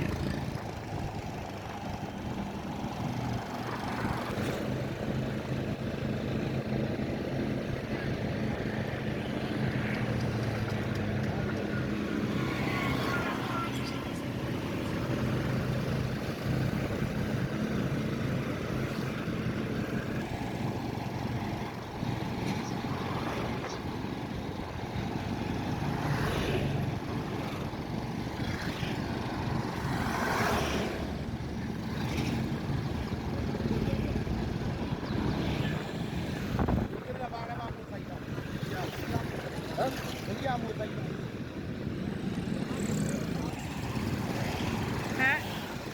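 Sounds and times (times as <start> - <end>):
road and air noise: 0.0 - 45.9.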